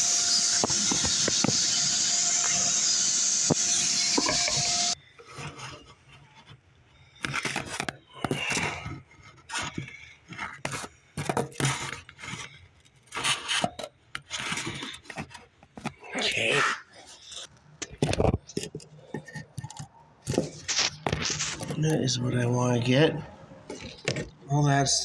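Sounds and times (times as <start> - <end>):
vacuum cleaner running: 0.0 - 5.0
scraping and rubbing: 0.0 - 6.5, 9.2 - 24.5.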